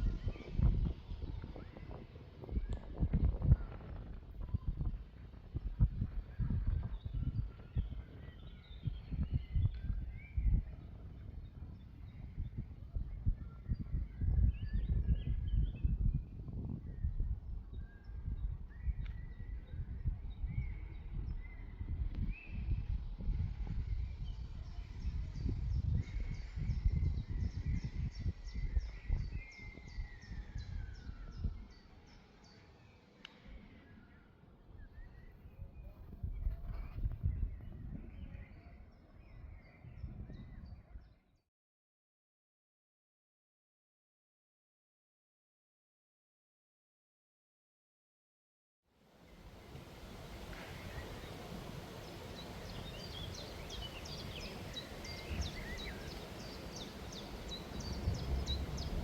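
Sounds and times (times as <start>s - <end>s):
wind buffeting microphone: 0.0s - 32.6s, 34.8s - 41.1s, 49.3s - 59.0s
songbird chirping: 49.3s - 59.0s
bird calls: 49.8s - 59.0s
low rumble: 50.3s - 59.0s.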